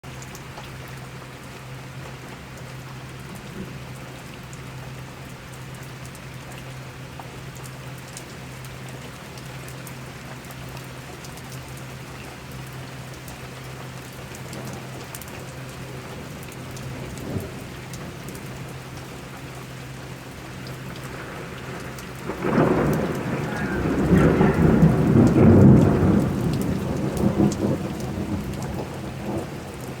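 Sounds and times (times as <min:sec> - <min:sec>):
steady rain falling: 0:00.0 - 0:30.0
thunder rumbling: 0:14.5 - 0:19.4, 0:20.3 - 0:30.0.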